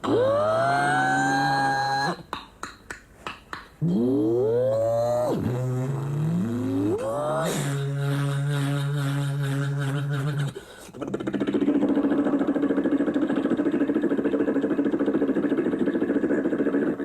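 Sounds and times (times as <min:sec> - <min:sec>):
man imitating a helicopter: 0:03.8 - 0:17.0.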